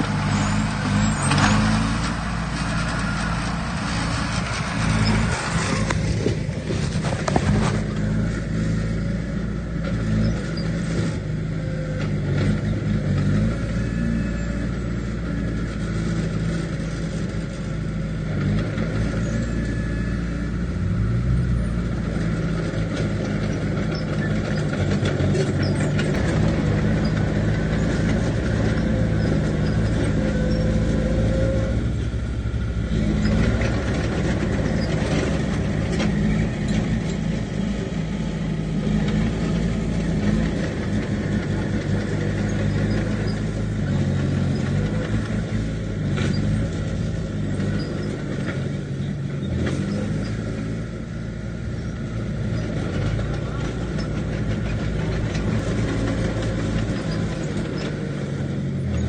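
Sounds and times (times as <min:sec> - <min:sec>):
heavy machinery diesel engine: 0:00.0 - 0:59.0.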